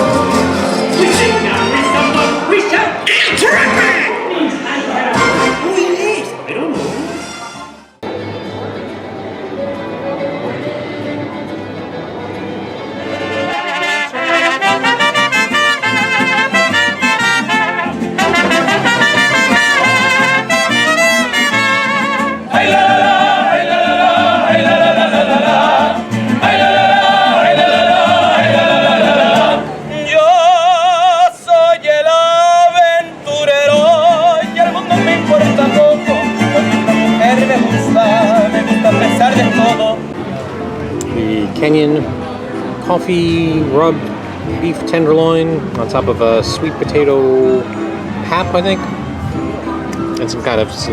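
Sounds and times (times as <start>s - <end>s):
brass instruments music: 0.0s - 4.3s, 5.0s - 8.0s, 13.0s - 29.9s, 34.4s - 40.1s
person singing with vibrato: 22.4s - 40.1s.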